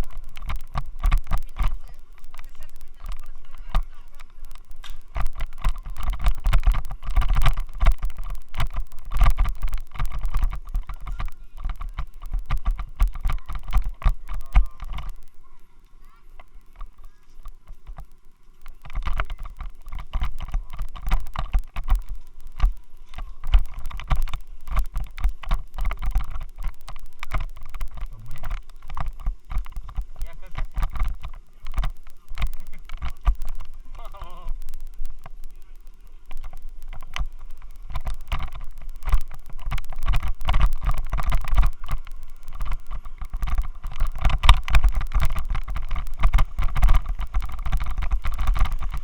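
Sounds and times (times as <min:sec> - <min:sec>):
camera rattling in helmet mount: 0:16.4 - 0:33.8, 0:36.3 - 0:49.0.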